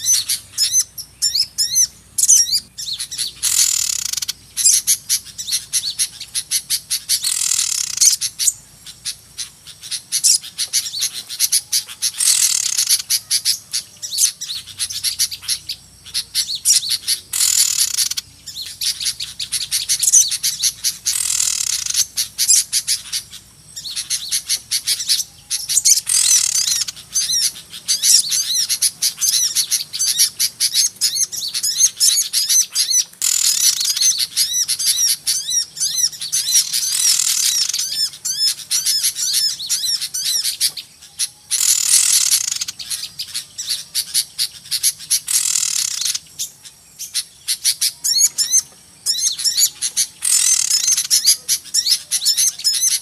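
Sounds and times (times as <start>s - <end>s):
small birds chirping and twittering: 0.0s - 53.0s.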